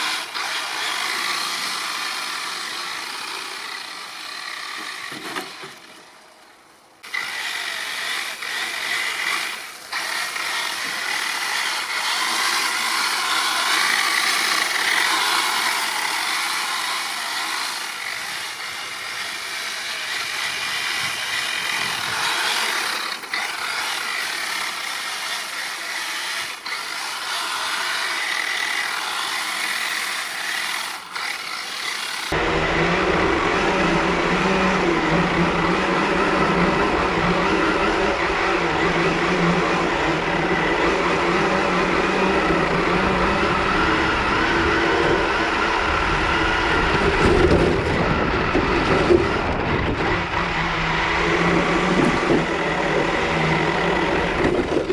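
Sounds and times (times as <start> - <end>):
rc car motor whining: 0.0 - 6.0, 7.0 - 54.9.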